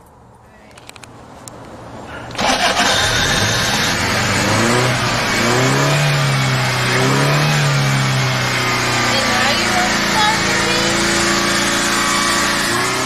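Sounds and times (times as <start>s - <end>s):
car engine revving: 2.4s - 13.0s.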